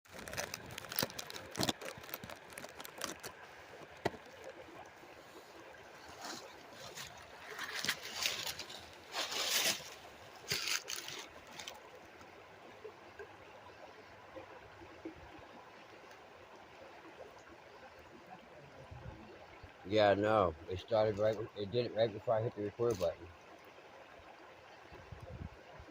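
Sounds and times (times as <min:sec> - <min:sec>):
flowing water rushing: 0:00.1 - 0:25.9.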